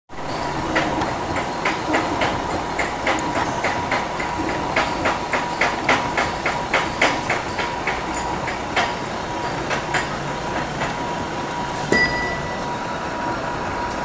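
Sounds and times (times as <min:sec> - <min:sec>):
machine clacking: 0:00.2 - 0:11.1
steady hum with thin whine: 0:11.2 - 0:14.0.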